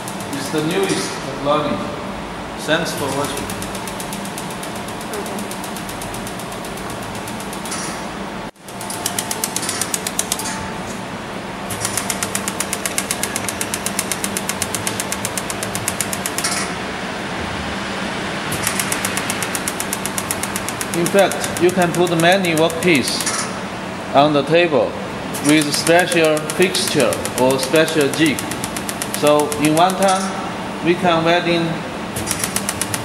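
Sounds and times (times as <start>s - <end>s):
laser welder pulsing: 0.0s - 1.0s, 2.6s - 10.6s, 11.7s - 16.8s, 18.5s - 23.7s, 25.3s - 30.4s, 32.1s - 33.0s
steady hum: 0.0s - 33.0s.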